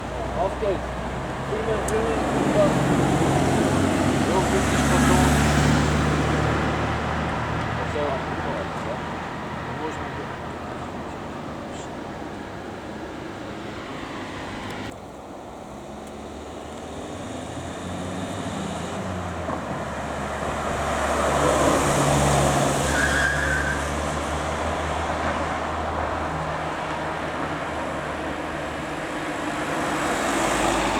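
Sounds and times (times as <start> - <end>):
ambulance engine and tyre noise: 0.0 - 30.9
high tyre squeal: 20.7 - 24.6.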